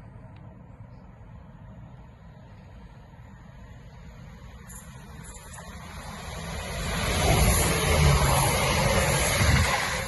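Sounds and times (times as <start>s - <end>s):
train rumbling: 4.6s - 10.0s.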